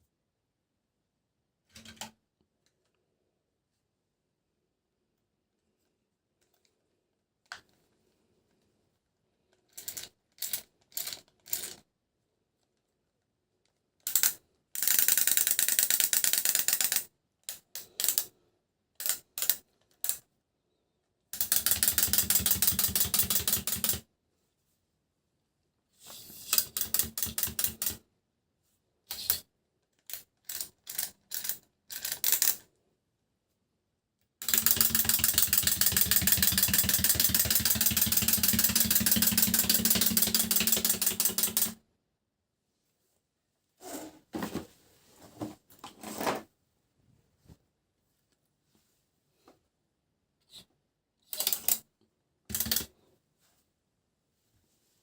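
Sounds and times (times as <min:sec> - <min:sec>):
toy train motor ticking: 0:14.1 - 0:17.0, 0:21.4 - 0:24.0, 0:26.3 - 0:28.0, 0:34.4 - 0:41.8, 0:51.3 - 0:51.8, 0:52.5 - 0:52.9.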